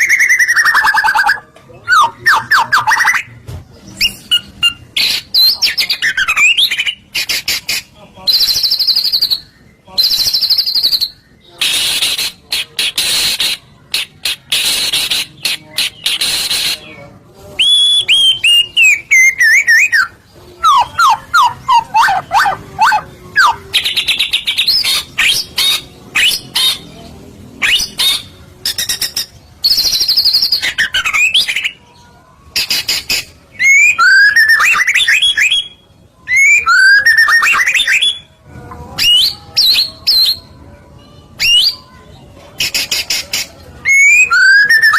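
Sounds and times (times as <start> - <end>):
songbird singing: 0.0 - 31.8.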